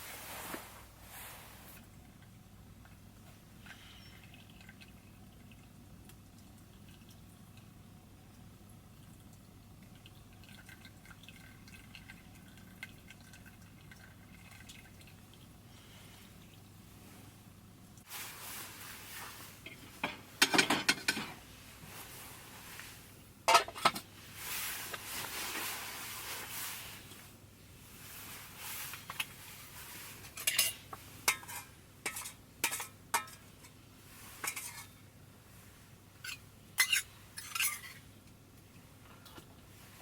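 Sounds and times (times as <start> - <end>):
metal cookware clinking: 19.7 - 21.4, 23.5 - 24.0, 30.3 - 33.8, 34.4 - 35.0, 36.2 - 38.0.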